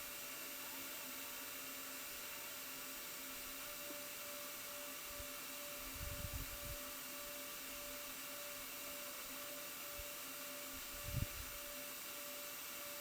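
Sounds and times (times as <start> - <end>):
faint electrical hum: 0.0 - 13.0.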